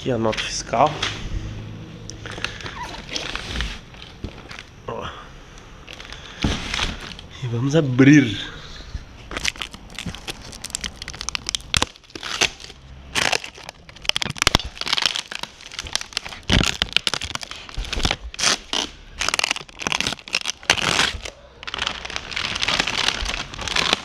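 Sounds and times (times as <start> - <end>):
packaging torn and crumpled: 9.3 - 24.0.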